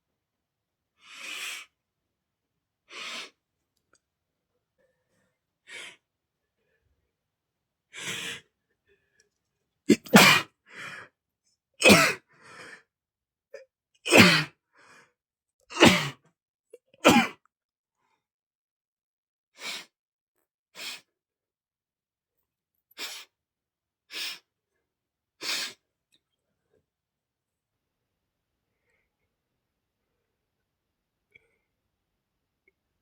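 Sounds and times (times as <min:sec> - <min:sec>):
man sneezing: 0:09.9 - 0:10.5, 0:11.8 - 0:12.2, 0:14.1 - 0:14.5, 0:15.7 - 0:16.2, 0:17.0 - 0:17.4.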